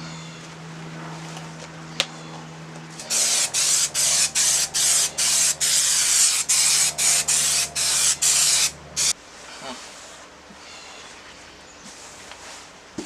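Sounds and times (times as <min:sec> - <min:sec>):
spray can hissing bursts: 0:03.0 - 0:09.1.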